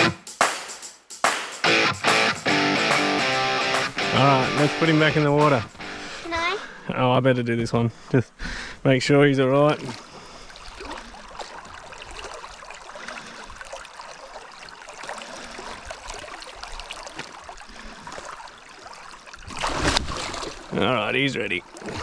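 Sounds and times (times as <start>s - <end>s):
river water trickling and lapping: 9.6s - 22.0s
small faint splashes: 9.7s - 20.8s.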